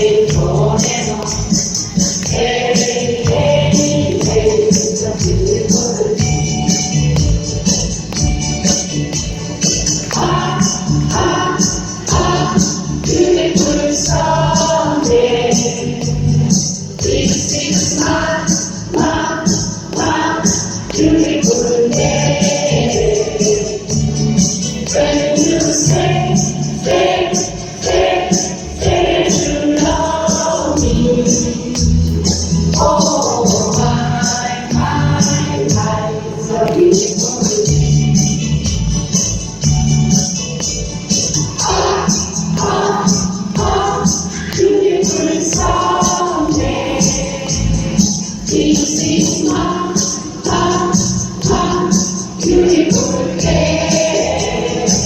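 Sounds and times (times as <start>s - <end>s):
voices singing in harmony: 0.0s - 7.0s, 9.6s - 38.6s, 41.2s - 55.0s
tambourine: 0.0s - 55.0s
steady bass line: 19.0s - 36.2s, 49.4s - 55.0s.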